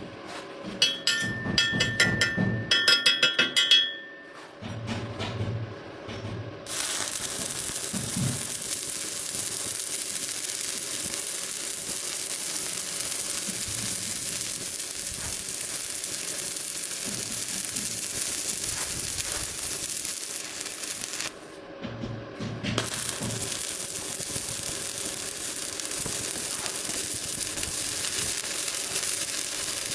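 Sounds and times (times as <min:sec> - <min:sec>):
welding arc crackling: 0:06.7 - 0:21.6, 0:22.8 - 0:29.9.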